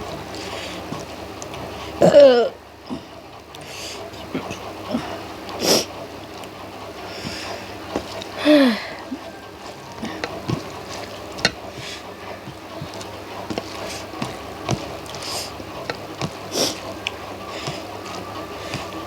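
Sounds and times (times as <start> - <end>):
wet chewing and lip-smacking: 9.0 - 19.0.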